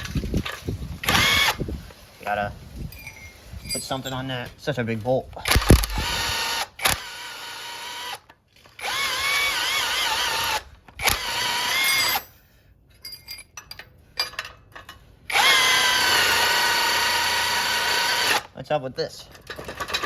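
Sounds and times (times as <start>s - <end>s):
impact driver whining: 5.5s - 12.3s, 15.3s - 18.5s.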